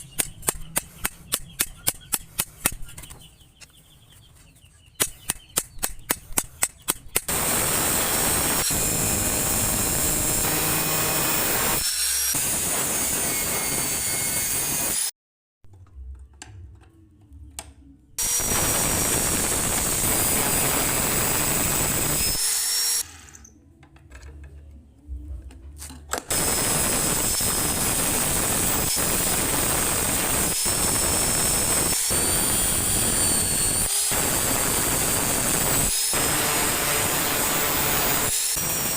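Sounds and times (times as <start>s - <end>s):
power grinder whining on steel: 7.3s - 15.1s, 18.2s - 23.5s, 26.3s - 38.9s.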